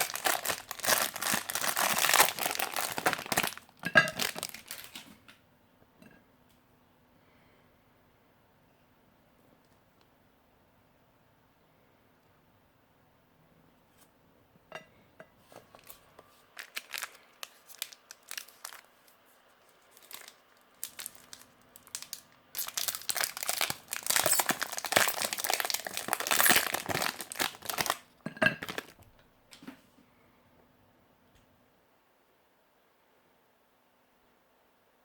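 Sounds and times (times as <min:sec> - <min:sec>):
plastic and foil packaging crinkling: 0:00.0 - 0:05.2, 0:15.5 - 0:29.0.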